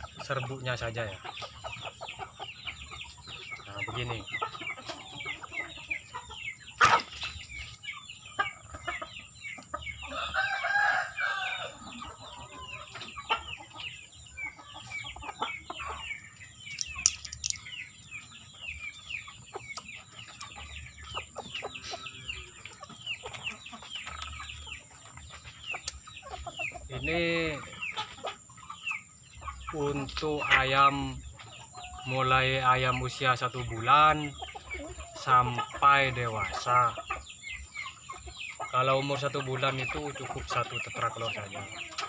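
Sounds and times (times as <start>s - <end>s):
chickens clucking: 0.0s - 42.0s
rooster crowing: 10.1s - 11.8s.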